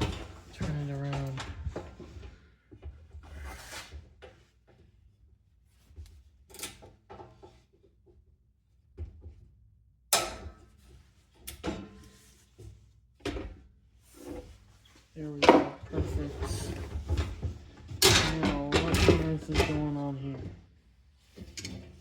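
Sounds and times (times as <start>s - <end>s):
fan being handled knocks and scrapes: 15.2s - 20.2s.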